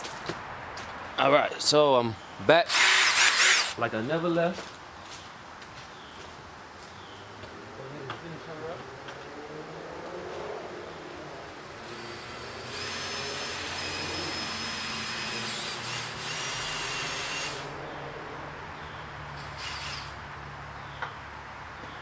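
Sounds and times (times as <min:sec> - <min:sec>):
cordless drill boring into wood: 0:02.7 - 0:03.8, 0:11.6 - 0:17.8, 0:19.4 - 0:20.2.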